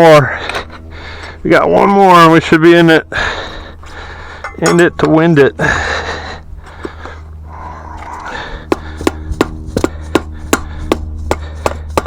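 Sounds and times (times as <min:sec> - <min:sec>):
steady low hum: 0:00.0 - 0:12.0
tire irons tapping wheel rim: 0:03.7 - 0:05.4, 0:08.0 - 0:12.0.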